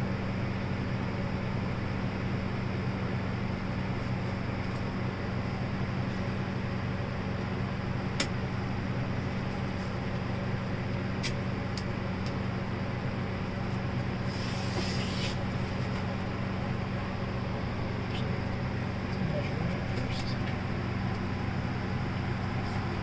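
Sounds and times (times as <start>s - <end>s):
steady low hum: 0.0s - 23.0s
brief scrape: 14.3s - 15.8s.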